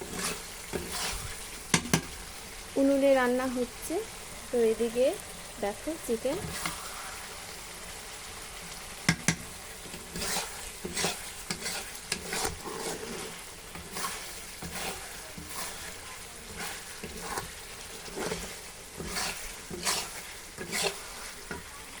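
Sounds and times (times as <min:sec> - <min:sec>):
spatula scraping a pan: 0:00.0 - 0:02.2, 0:06.1 - 0:07.5, 0:08.6 - 0:22.0
chicken sizzling in a pan: 0:00.0 - 0:22.0.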